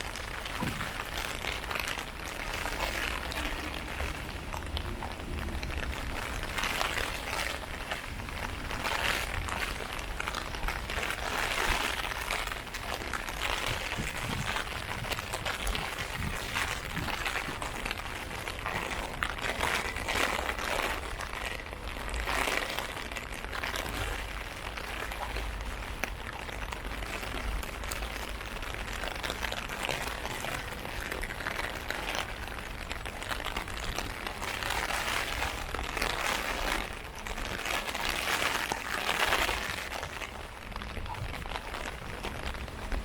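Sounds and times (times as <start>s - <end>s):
low rumble: 0.0s - 11.4s
heavy rain on umbrella: 0.0s - 43.0s.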